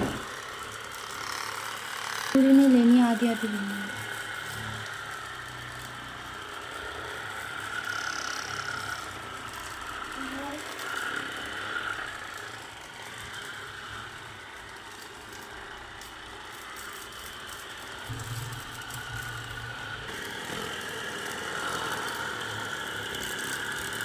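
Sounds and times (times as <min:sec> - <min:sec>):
massage bed mechanical whir: 0:00.0 - 0:24.0
low hum: 0:18.1 - 0:20.1.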